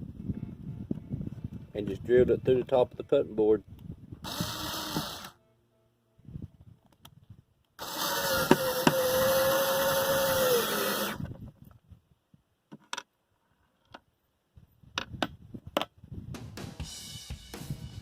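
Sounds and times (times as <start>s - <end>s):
power drill drilling: 4.2s - 5.4s, 7.8s - 11.3s.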